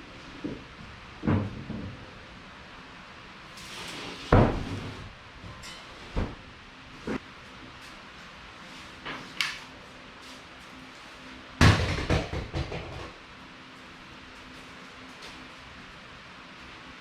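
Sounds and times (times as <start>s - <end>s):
objects knocking and clunking: 0.4s - 2.0s, 11.6s - 13.2s.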